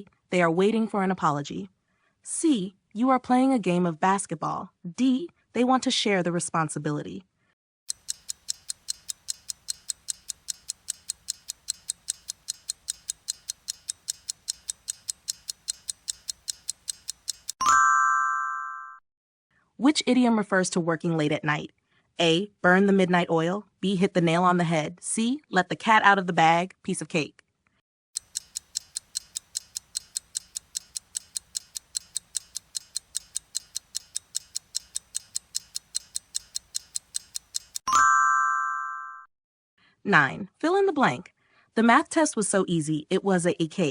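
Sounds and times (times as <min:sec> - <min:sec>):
rapid clock ticking: 0:07.9 - 0:17.6, 0:28.2 - 0:37.9
bright bell ding: 0:17.6 - 0:19.0, 0:37.9 - 0:39.3.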